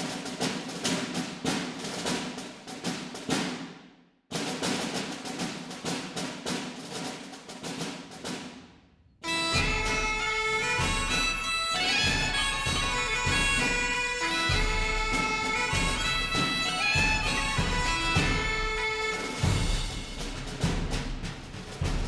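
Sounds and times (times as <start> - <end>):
timpani drum roll: 12.1 - 22.0.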